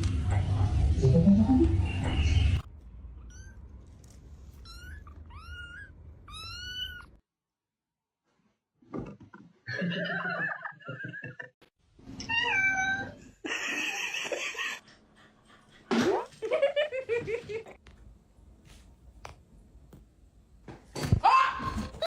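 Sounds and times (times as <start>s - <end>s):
cats meowing: 4.6s - 7.2s.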